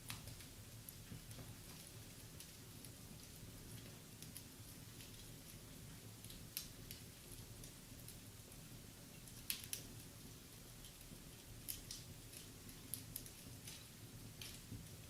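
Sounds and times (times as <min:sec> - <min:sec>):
wood fire crackling: 0:00.0 - 0:15.0
fire pops: 0:10.8 - 0:15.0.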